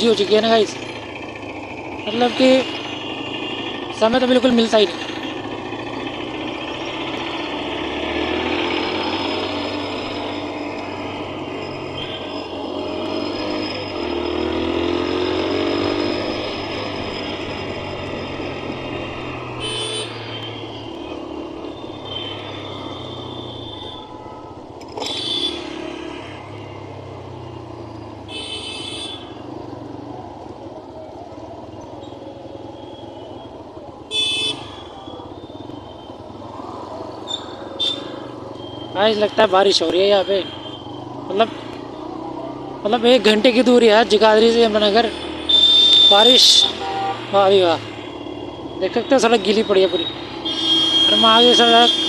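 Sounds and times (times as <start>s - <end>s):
motorcycle engine: 0.0s - 52.0s
road and wind noise: 0.0s - 52.0s
vehicle horn toots: 19.5s - 20.9s, 25.0s - 26.0s, 28.3s - 29.4s, 34.1s - 35.0s, 37.8s - 38.8s, 45.1s - 47.4s, 49.9s - 52.0s.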